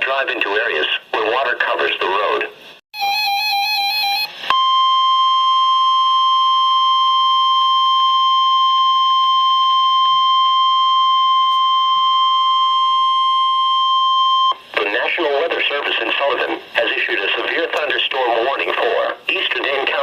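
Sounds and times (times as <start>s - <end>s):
loud steady high alarm tone: 3.0s - 14.6s.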